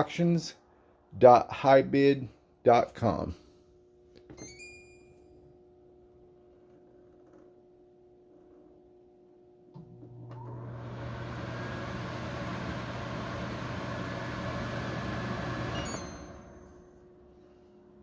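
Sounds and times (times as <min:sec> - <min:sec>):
electric fan motor humming: 0:08.9 - 0:18.0
electric motor switch click: 0:09.7 - 0:10.8.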